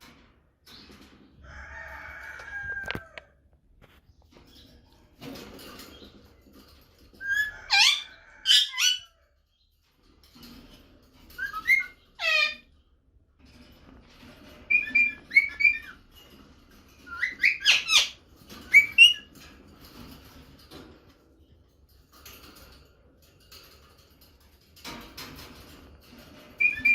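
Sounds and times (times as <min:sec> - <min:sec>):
parakeet squawking: 0:12.2 - 0:12.6.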